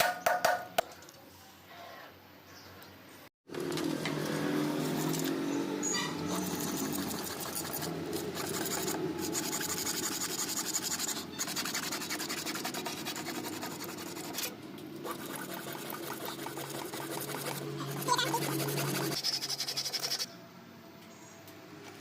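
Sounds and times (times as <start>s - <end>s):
tool scraping pipe: 5.9s - 20.3s.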